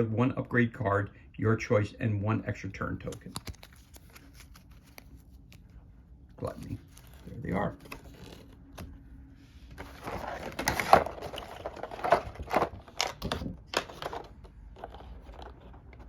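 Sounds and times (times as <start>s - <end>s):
plastic packaging crinkling: 3.0s - 5.7s, 9.8s - 15.7s.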